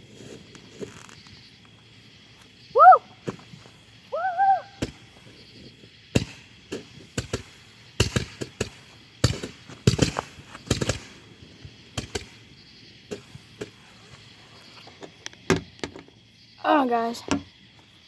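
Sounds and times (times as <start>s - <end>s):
fireworks bangs and cracks: 4.8s - 13.9s.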